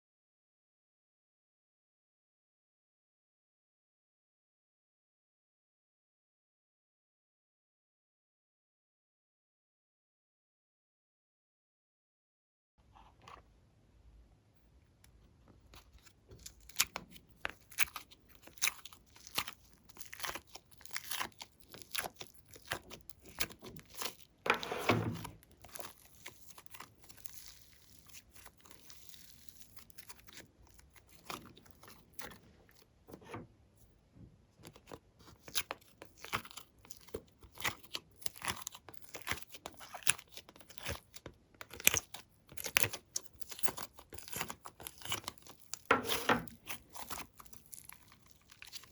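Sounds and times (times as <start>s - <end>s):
slime squelching: 15.6s - 33.0s, 34.6s - 48.9s.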